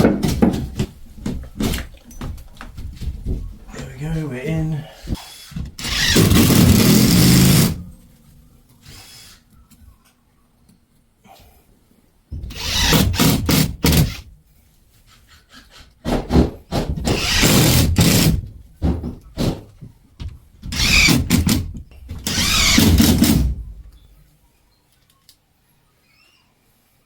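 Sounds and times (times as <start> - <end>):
cordless drill driving screws: 5.8 - 7.8, 12.5 - 14.2, 17.1 - 18.4, 20.7 - 23.6.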